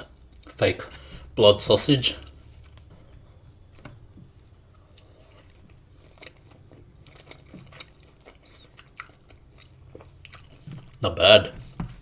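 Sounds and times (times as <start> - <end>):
wet chewing and mouth clicks: 3.8 - 11.1.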